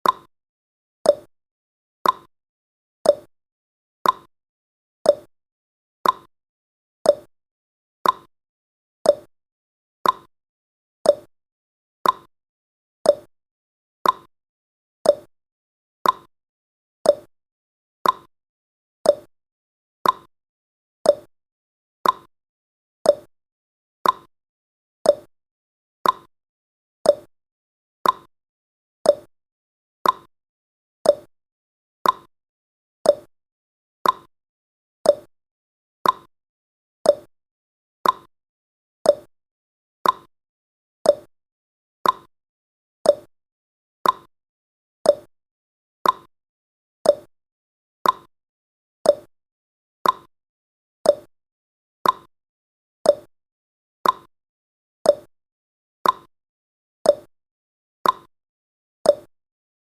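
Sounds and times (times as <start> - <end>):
clock ticking: 34.0 - 34.3, 42.0 - 42.3, 50.0 - 50.3.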